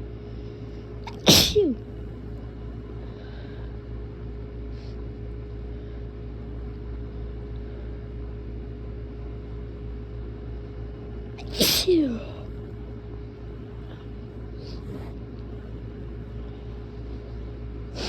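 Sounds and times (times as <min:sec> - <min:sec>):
low background hum: 0:00.0 - 0:18.0
person sneezing: 0:01.1 - 0:01.8, 0:11.4 - 0:12.4.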